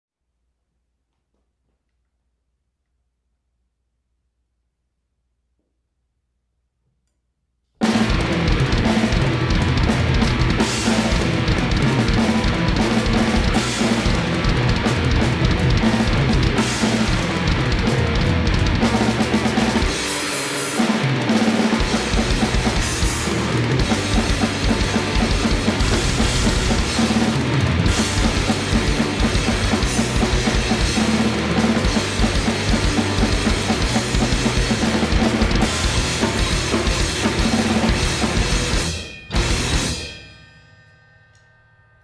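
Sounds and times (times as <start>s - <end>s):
fast grindcore drumming: 7.8s - 40.2s.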